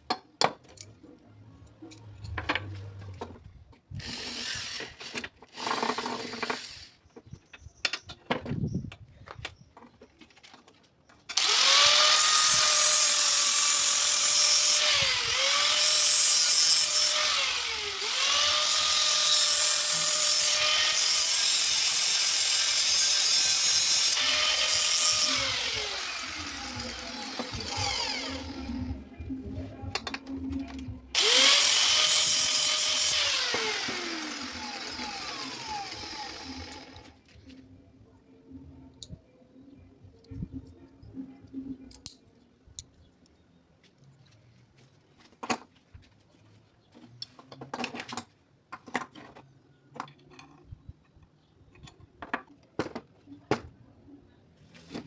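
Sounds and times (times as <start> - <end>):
electric power tool working metal: 4.0 - 7.0, 11.3 - 29.0, 31.2 - 37.1.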